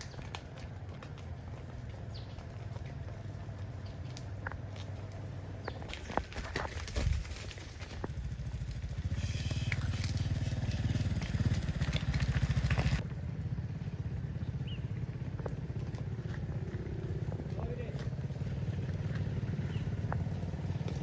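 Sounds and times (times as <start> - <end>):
small engine puttering: 5.6 - 13.1.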